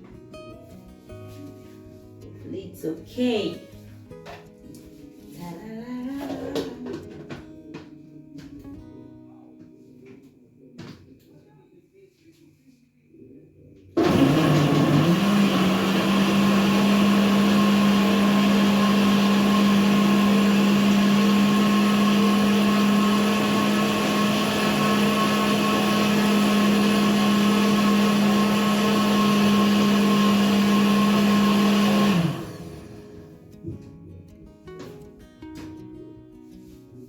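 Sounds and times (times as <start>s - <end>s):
electric blender running: 14.0s - 33.2s.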